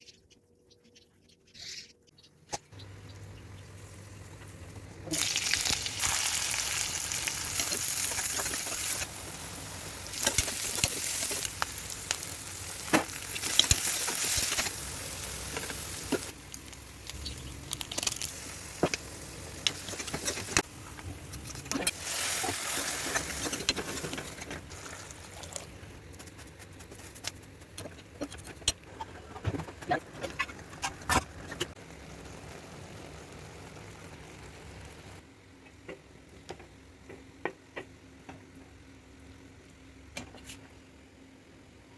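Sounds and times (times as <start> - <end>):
vegetables sizzling in oil: 5.0 - 25.7.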